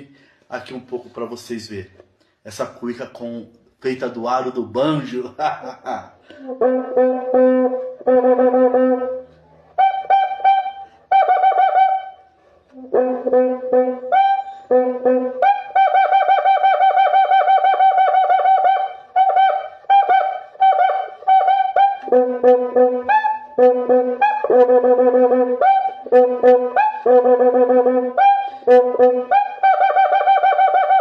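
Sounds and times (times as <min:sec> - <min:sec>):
cuica squeaky pitched strokes: 0:06.4 - 0:31.0.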